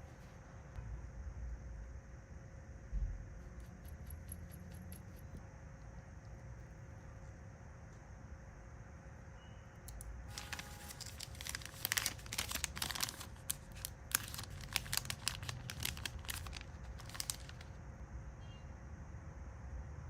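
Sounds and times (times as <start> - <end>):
packaging crinkling: 10.3 - 17.8.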